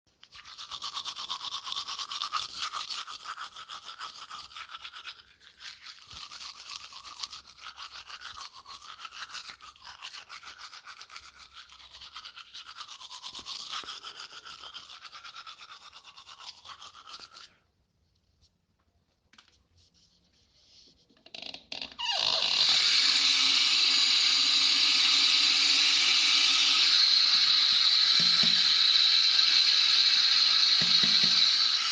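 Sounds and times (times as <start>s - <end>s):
teeth being brushed: 0.2s - 17.8s, 22.0s - 31.9s
running water stream: 22.6s - 31.9s.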